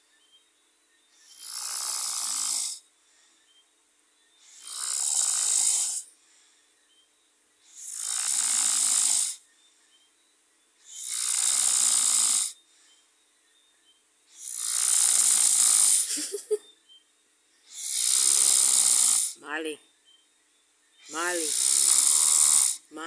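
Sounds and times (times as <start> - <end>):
hissing snores: 1.2 - 2.9, 4.4 - 6.2, 7.6 - 9.5, 10.8 - 12.6, 14.3 - 16.4, 17.7 - 19.7, 21.0 - 23.0.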